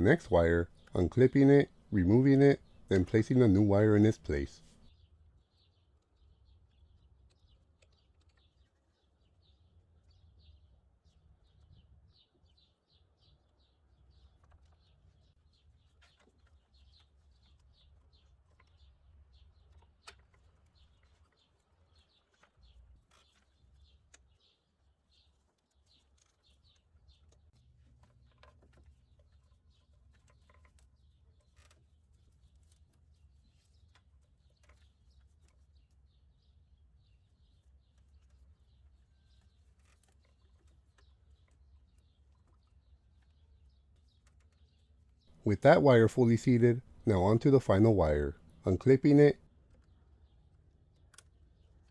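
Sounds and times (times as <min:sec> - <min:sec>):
faint birds chirping: 0:00.0 - 0:04.8.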